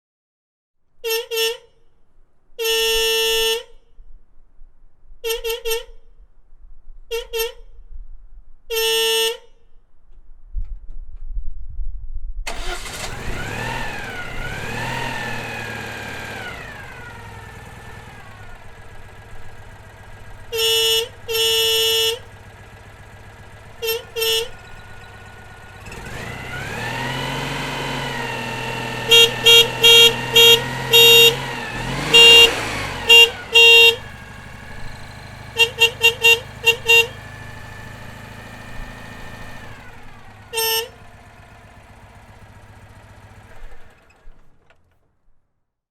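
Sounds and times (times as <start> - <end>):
car horn honking: 1.0 - 1.8, 2.6 - 3.8, 5.2 - 6.0, 7.1 - 7.7, 8.7 - 9.6, 12.5 - 44.1
car engine revving: 12.5 - 44.6.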